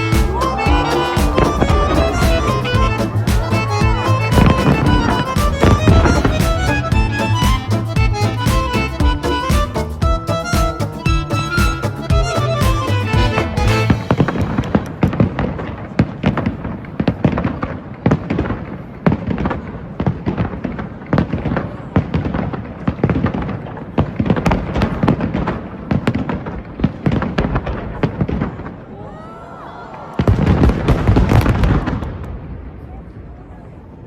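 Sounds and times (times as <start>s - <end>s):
fireworks bangs and crackling: 0.0s - 7.8s, 13.4s - 28.9s, 30.1s - 33.6s.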